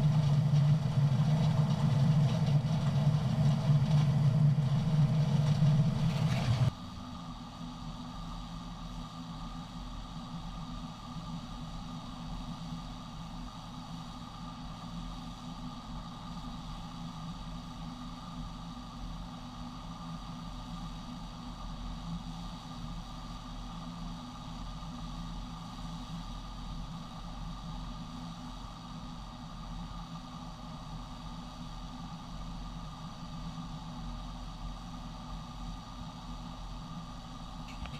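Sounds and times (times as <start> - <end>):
farm machine engine running: 0.0 - 6.7.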